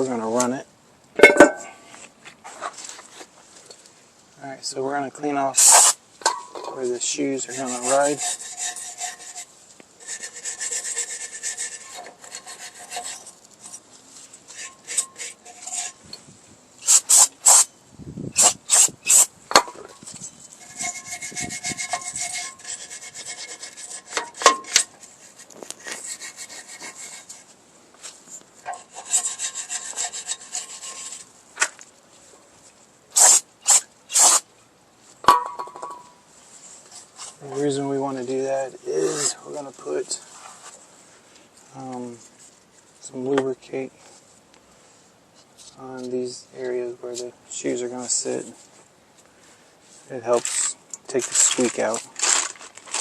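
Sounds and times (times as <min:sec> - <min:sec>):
hand scraping metal plate: 0:01.2 - 0:03.3, 0:05.5 - 0:17.7, 0:18.4 - 0:32.5, 0:33.1 - 0:34.4, 0:35.2 - 0:40.8, 0:49.9 - 0:53.0
short sharp scraping bursts: 0:05.5 - 0:06.0, 0:06.8 - 0:16.1, 0:16.8 - 0:17.7, 0:18.3 - 0:19.3, 0:20.0 - 0:27.5, 0:28.1 - 0:31.3, 0:33.1 - 0:34.5, 0:49.8 - 0:53.0.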